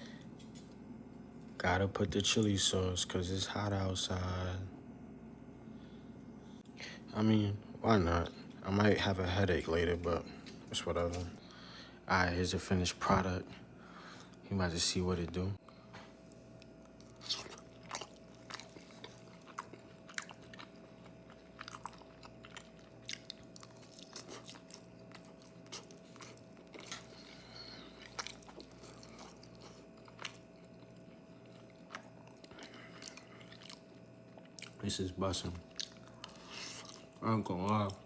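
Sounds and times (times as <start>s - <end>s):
faint steady hum: 0.0s - 38.0s
person chewing food: 15.8s - 34.8s, 35.7s - 38.0s.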